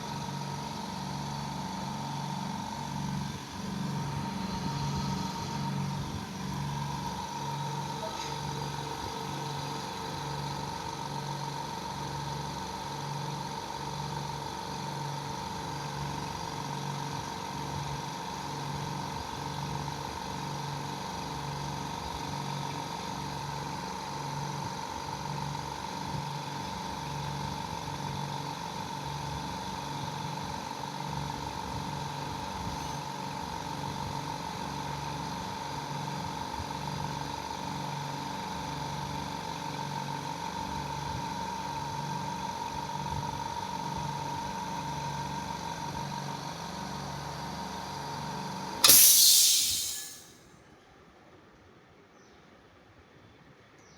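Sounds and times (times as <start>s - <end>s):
air compressor running: 0.0s - 14.4s, 46.4s - 50.3s.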